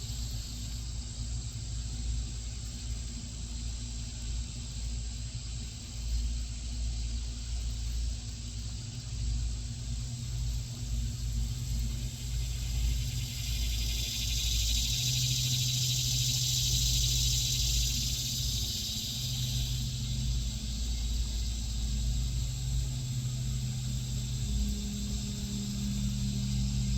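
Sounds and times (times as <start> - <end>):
high hissing buzz: 9.9 - 26.9.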